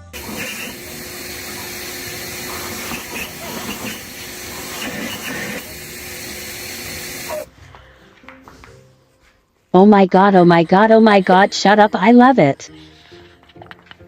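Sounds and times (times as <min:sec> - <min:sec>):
loud steady hiss: 0:00.0 - 0:07.5.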